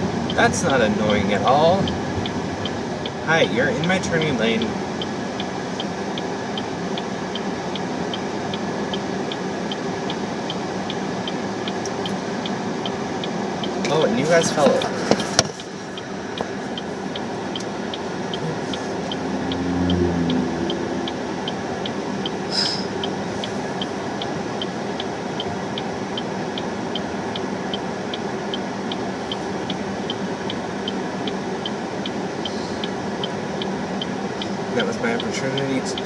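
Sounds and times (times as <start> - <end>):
car and traffic rumble: 0.0 - 36.0
turn signal ticking: 0.0 - 36.0
vehicle passing: 18.2 - 23.4.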